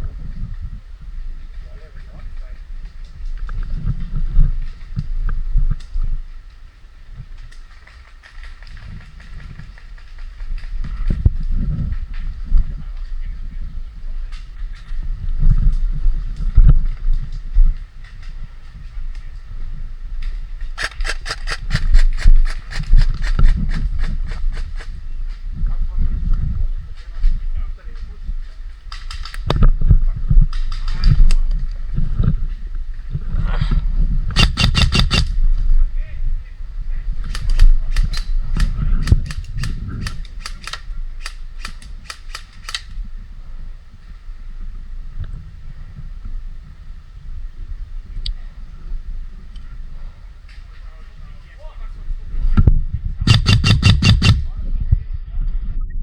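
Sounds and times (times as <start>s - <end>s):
low rumble of wind: 0.0s - 56.0s
microphone handling noise: 2.5s - 6.3s, 14.2s - 27.6s, 29.3s - 43.2s, 52.3s - 56.0s
airsoft gun firing: 20.8s - 24.1s, 34.4s - 35.4s, 37.3s - 42.8s, 53.3s - 54.5s.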